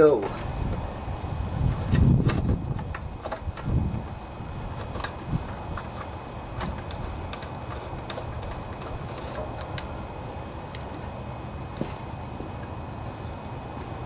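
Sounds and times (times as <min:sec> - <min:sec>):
metal parts and tools clicking: 0:04.8 - 0:09.9.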